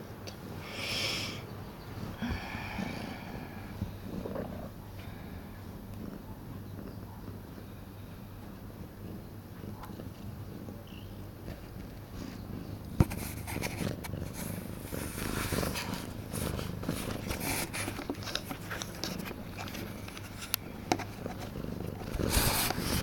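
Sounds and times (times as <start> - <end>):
cat purring: 0.0 - 23.0
scratchy rustles: 11.4 - 23.0.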